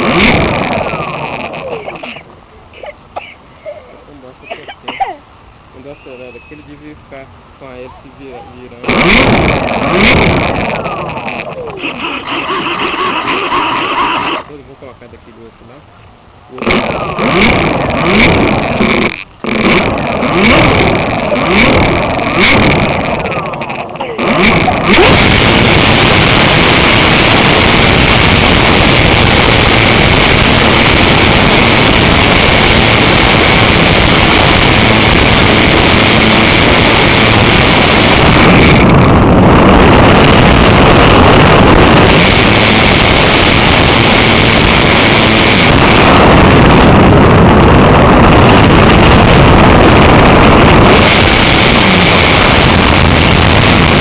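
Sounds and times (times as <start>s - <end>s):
electric model plane motor whining: 9.0s - 14.5s.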